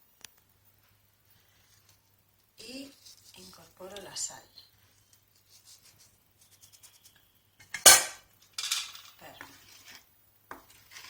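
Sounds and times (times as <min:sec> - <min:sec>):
utensil scraping a pan: 0:09.4 - 0:11.0.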